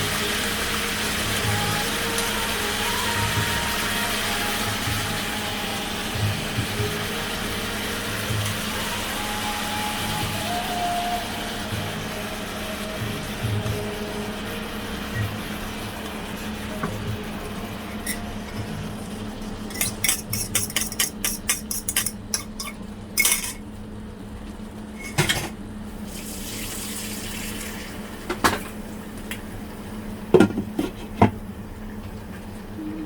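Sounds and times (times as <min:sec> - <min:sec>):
utensil clinking against a pan: 0:17.9 - 0:18.7, 0:19.7 - 0:23.6.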